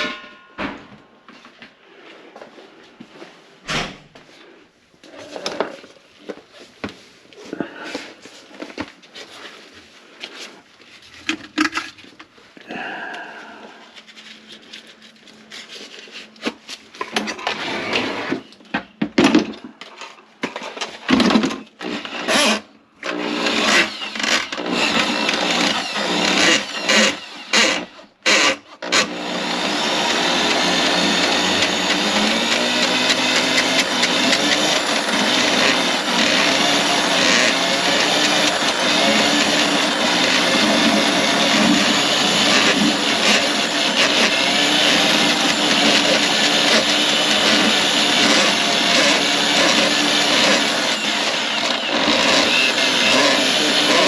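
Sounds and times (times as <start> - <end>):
drain-cleaning machine motor: 29.1 - 54.0.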